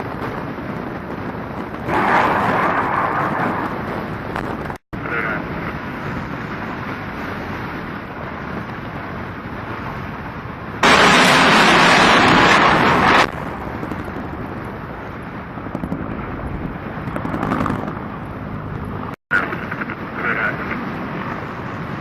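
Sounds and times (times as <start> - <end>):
background rumble: 0.0 - 22.0
minigun firing burst: 10.8 - 13.3.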